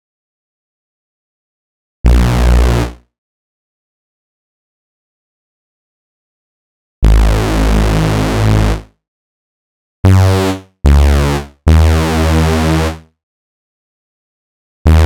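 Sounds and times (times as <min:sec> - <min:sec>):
bass-heavy synthesizer notes: 0:10.1 - 0:13.0.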